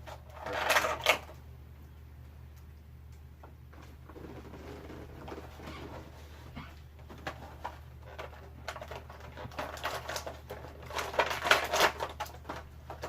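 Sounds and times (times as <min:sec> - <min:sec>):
plastic packaging clicks and rustling: 0:00.0 - 0:01.4, 0:07.0 - 0:13.0
steady low hum: 0:00.0 - 0:13.0.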